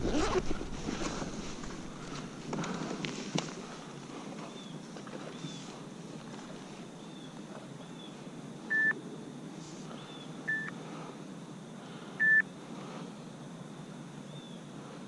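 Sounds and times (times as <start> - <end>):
low rush of wind: 0.0 - 15.0
short electronic beeps: 8.7 - 9.0, 10.5 - 10.7, 12.2 - 12.4.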